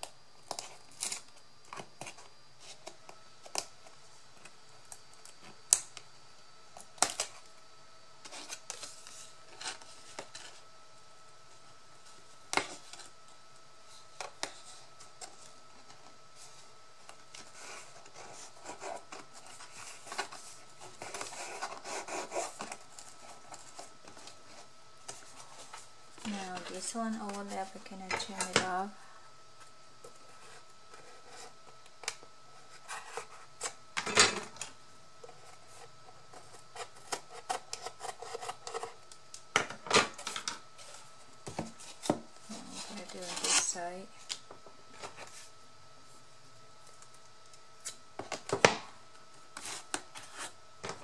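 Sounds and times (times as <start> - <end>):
paper rustling and scraping: 8.2 - 10.7, 13.8 - 28.8, 30.1 - 33.8, 40.1 - 44.3, 44.9 - 45.6, 49.5 - 51.0.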